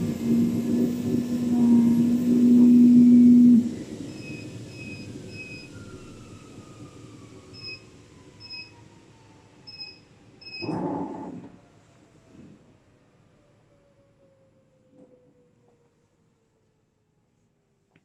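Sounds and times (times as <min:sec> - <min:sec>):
cutting machine humming: 0:00.0 - 0:03.8
faint whine falling in pitch: 0:00.0 - 0:05.9.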